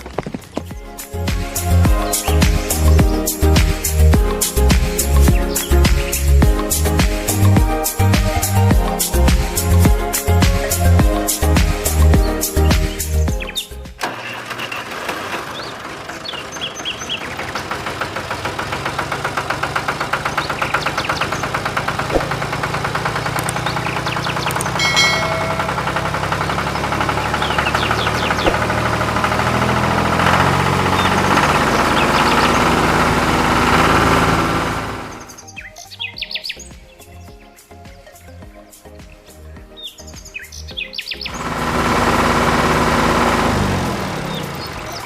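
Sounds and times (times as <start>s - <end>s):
bird chirps: 0.0s - 7.4s, 10.2s - 13.9s, 15.6s - 17.7s, 20.3s - 22.4s, 23.1s - 28.9s, 30.8s - 32.8s, 35.1s - 41.4s.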